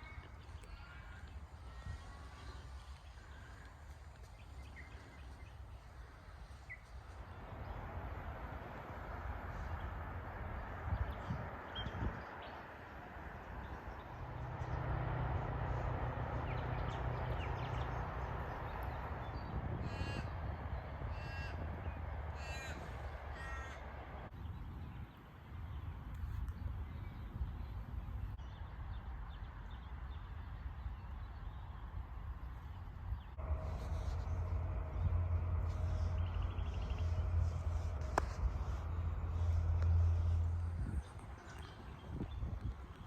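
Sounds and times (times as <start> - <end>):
crow cawing: 21.2 - 21.6, 22.4 - 23.9
low rumble: 33.2 - 43.0.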